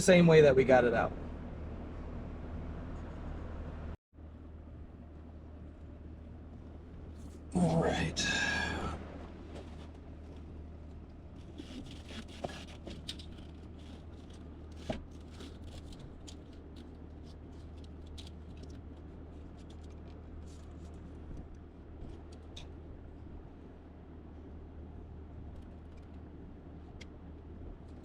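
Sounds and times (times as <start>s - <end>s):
steady low hum: 0.0s - 28.0s
parts clicking and scraping: 9.5s - 22.7s.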